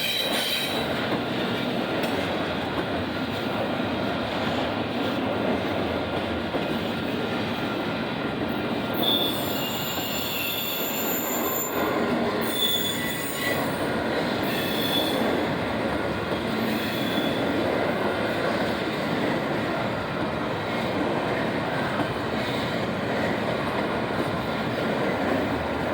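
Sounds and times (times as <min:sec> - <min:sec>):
train wheels rumbling on rail: 0:00.0 - 0:25.9
high-pitched wheel squeals: 0:09.0 - 0:11.8, 0:12.4 - 0:13.8, 0:14.5 - 0:15.2.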